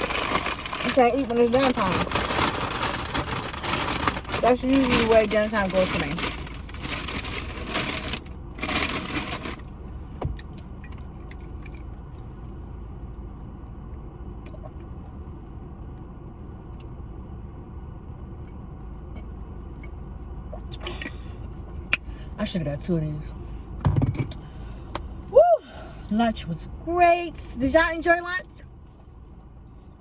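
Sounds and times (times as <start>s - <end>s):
rustling handling noise: 0.0s - 9.8s
low steady rumble: 0.0s - 30.0s.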